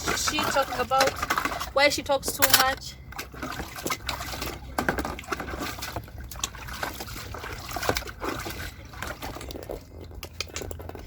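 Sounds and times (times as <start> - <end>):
water sloshing and trickling: 0.0 - 11.0
utensils knocking and clinking: 2.3 - 2.8.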